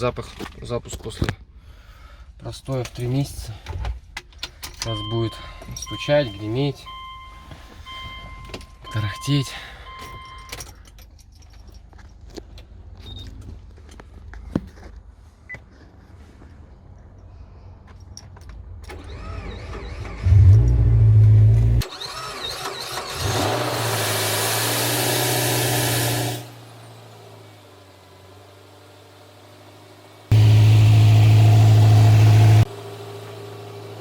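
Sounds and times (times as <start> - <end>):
car engine cranking and firing: 18.8 - 26.7, 30.3 - 33.2.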